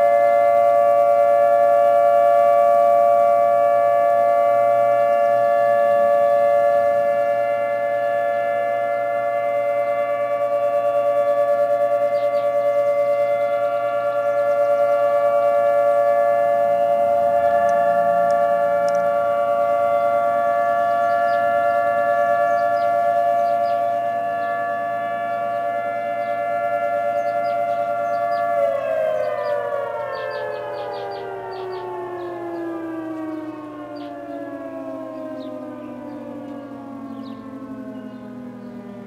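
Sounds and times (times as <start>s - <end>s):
tornado siren chord: 0.0s - 39.0s.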